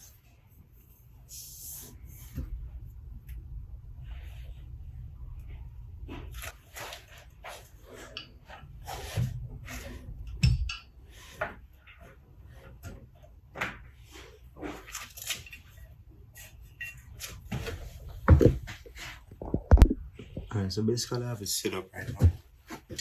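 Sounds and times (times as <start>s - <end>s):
knocks clicks and rubbing of parts: 6.1s - 20.5s
heavy thumps: 17.5s - 20.6s.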